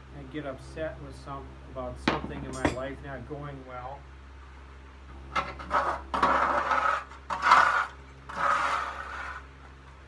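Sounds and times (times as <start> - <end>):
objects dragged across a surface: 5.4 - 9.5.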